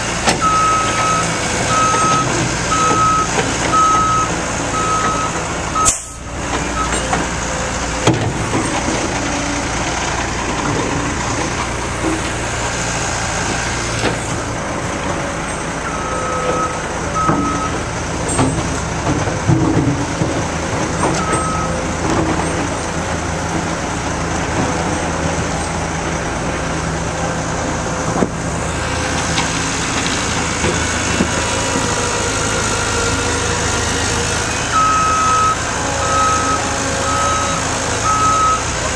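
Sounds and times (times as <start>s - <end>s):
diesel engine running: 0.0s - 38.9s
reversing alarm beeps: 0.4s - 6.2s, 15.9s - 17.8s, 21.2s - 21.7s, 34.7s - 38.7s.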